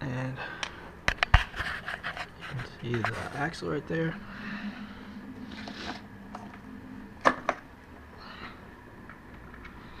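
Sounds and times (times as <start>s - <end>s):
soft breathy noise: 4.2s - 6.1s.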